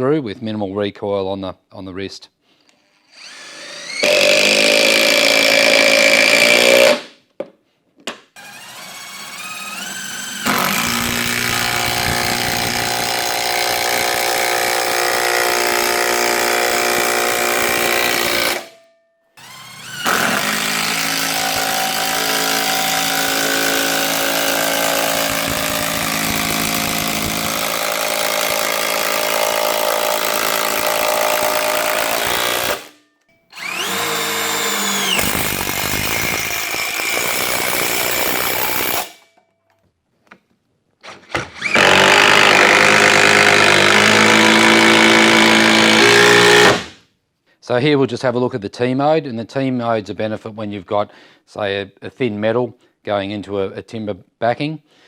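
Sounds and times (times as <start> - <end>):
impact driver hammering screws: 3.2 - 7.1, 8.4 - 18.8, 19.4 - 39.3, 41.0 - 47.0.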